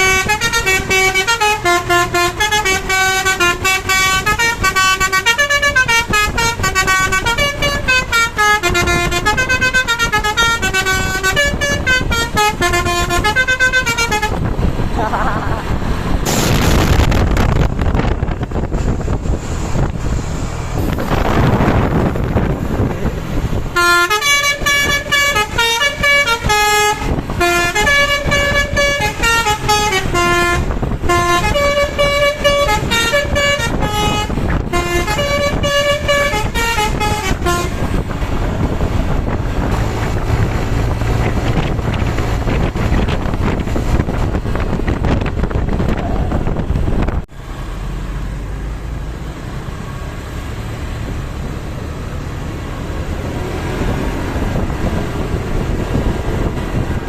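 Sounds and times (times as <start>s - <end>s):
musical air horn tune: 0.0s - 14.4s, 23.7s - 38.1s
bus engine and road noise: 0.0s - 57.0s.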